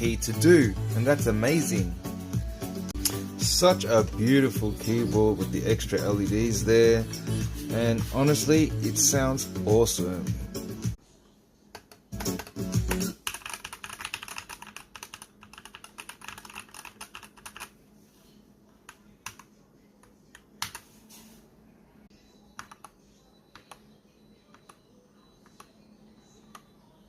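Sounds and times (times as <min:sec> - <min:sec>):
mechanical keyboard typing: 0:11.8 - 0:17.7, 0:19.2 - 0:19.5.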